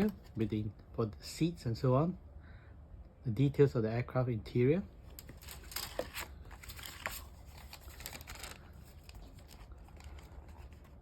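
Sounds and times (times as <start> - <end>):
plastic bag crinkling: 5.2 - 11.0.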